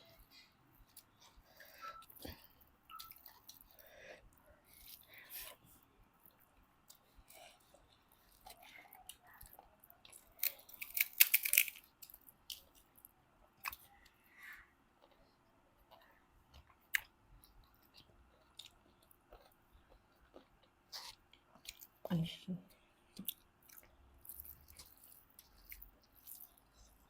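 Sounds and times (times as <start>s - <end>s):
person chewing: 0.2s - 5.6s, 6.2s - 13.0s, 15.8s - 22.1s, 23.1s - 27.0s
loud crunching bites: 10.4s - 11.8s.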